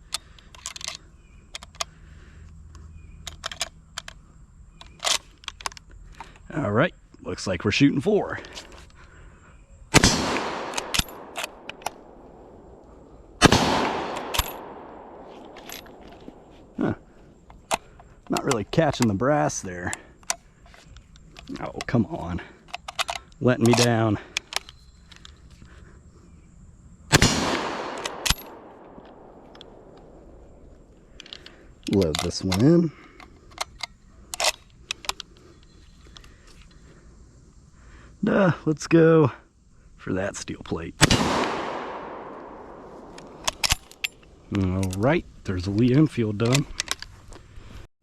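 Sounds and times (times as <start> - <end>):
rifle bolt clicks: 0.1 - 2.0, 3.2 - 4.2, 10.0 - 16.7, 22.6 - 25.4, 27.1 - 30.2, 31.1 - 36.3, 41.0 - 45.0, 45.7 - 47.1
rifle shots echoing: 9.9 - 16.8, 27.1 - 30.3, 41.0 - 44.0.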